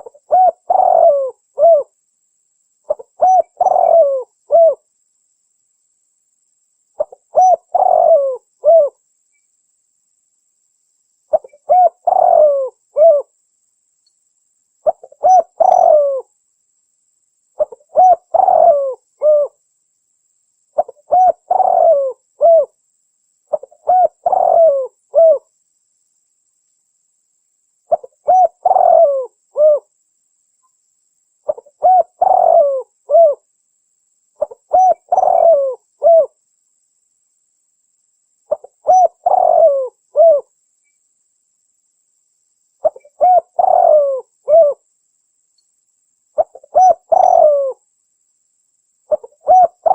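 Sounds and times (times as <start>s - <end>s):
dove cooing: 0.0s - 1.9s, 2.9s - 4.8s, 7.0s - 9.0s, 11.3s - 13.3s, 14.8s - 16.3s, 17.6s - 19.6s, 20.8s - 22.8s, 23.5s - 25.5s, 27.9s - 29.9s, 31.5s - 33.4s, 34.4s - 36.4s, 38.5s - 40.5s, 42.8s - 44.8s, 46.4s - 47.8s, 49.1s - 49.9s.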